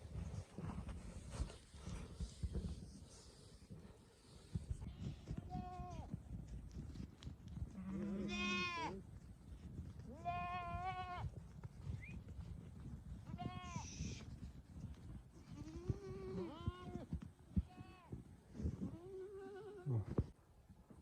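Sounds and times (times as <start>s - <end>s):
low crackling background: 0.0s - 21.0s
sheep and goats bleating: 7.7s - 9.0s, 10.1s - 11.2s.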